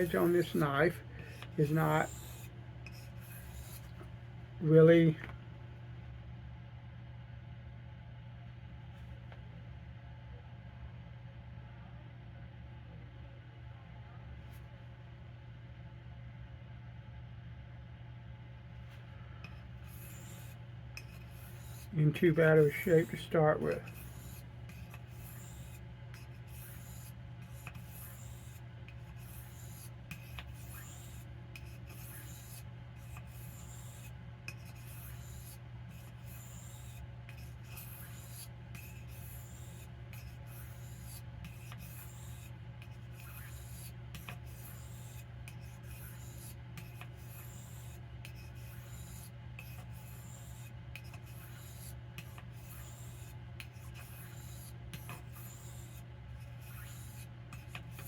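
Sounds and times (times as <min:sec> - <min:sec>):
knife scraping sharpening stone: 0:00.0 - 0:00.7, 0:01.3 - 0:03.9, 0:19.5 - 0:58.0
steady low hum: 0:00.0 - 0:58.0.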